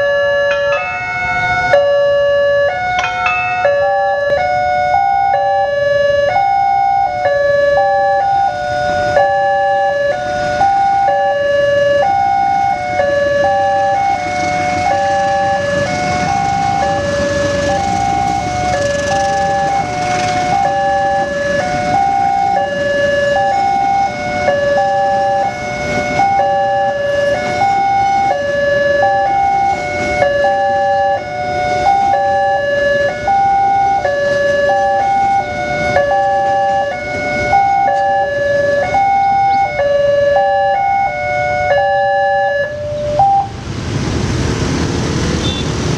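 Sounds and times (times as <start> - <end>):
level crossing sirens two-tone: 0.0 - 43.7
broad rumbling noise: 42.8 - 45.9.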